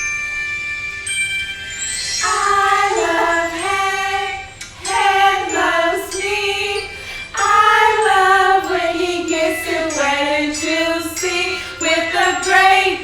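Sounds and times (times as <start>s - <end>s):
jingling bell-like backing: 0.0s - 13.0s
person singing: 2.2s - 13.0s.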